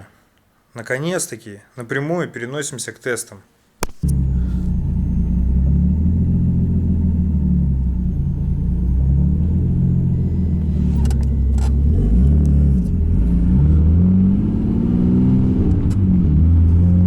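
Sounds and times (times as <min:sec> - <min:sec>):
car engine revving: 0:04.0 - 0:17.0.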